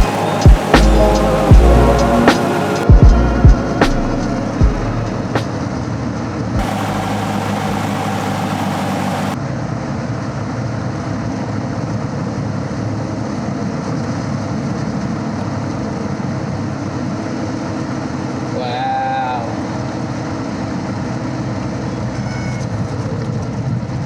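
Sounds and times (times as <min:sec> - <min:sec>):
loud hiss: 0:00.0 - 0:02.9, 0:06.6 - 0:09.4
piston engine and propeller running: 0:00.0 - 0:09.4.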